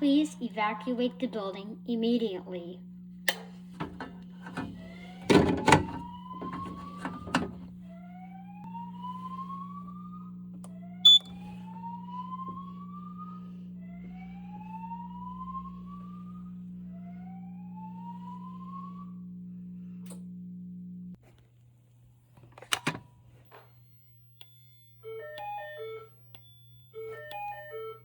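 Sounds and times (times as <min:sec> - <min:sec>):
steady low hum: 0:00.0 - 0:28.0
fire alarm whoop tone: 0:04.6 - 0:20.0, 0:23.5 - 0:28.0.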